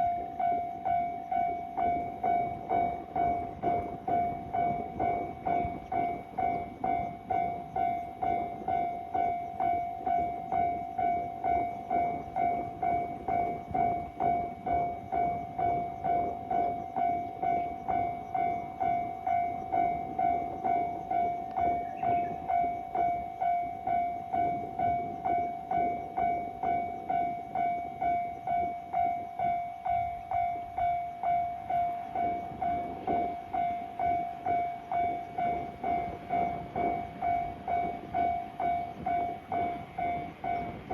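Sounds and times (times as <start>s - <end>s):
level-crossing electronic bell: 0.0s - 40.9s
passing train rumble and clatter: 0.0s - 40.9s.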